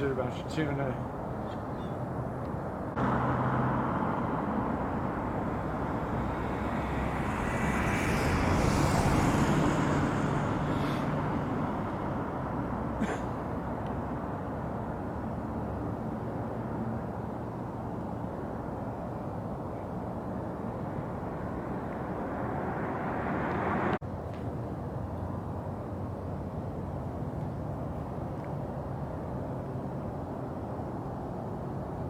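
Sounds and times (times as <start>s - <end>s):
car driving past: 3.0s - 13.0s, 20.6s - 24.0s.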